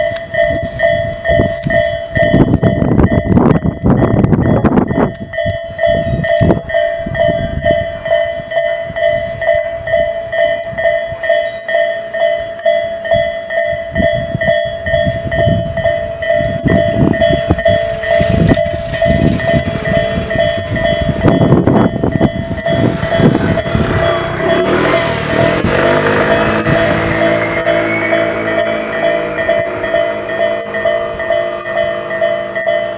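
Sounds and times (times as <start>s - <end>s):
electronic level crossing bell: 0.0s - 32.9s
train clattering over rails: 0.0s - 32.9s.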